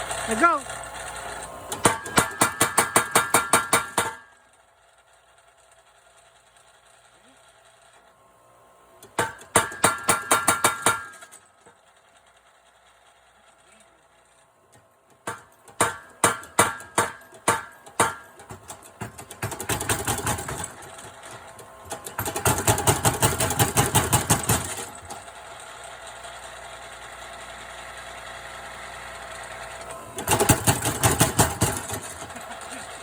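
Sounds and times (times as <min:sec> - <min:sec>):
power hammer blows: 0:01.7 - 0:04.4.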